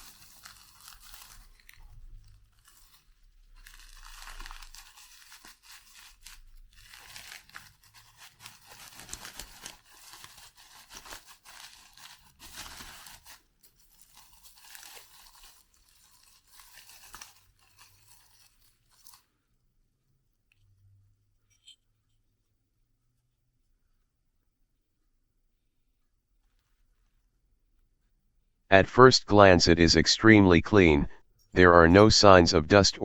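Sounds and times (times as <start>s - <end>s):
packaging crinkling: 0.0s - 19.3s.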